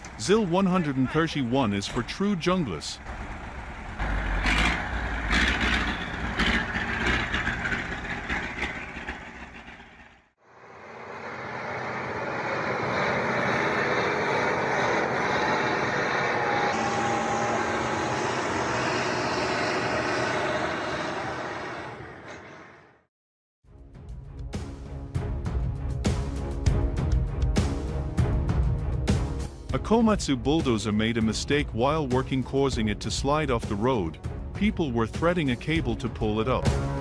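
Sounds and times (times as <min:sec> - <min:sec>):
heavy vehicle engine: 0:00.0 - 0:23.0.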